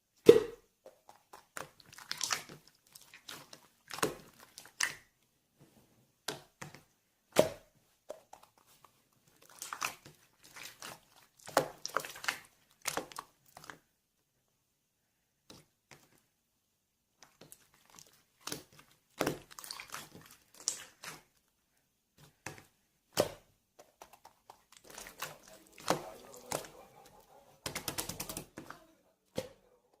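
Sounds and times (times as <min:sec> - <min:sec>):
crinkling and tapping: 0:07.8 - 0:13.9, 0:22.1 - 0:30.0.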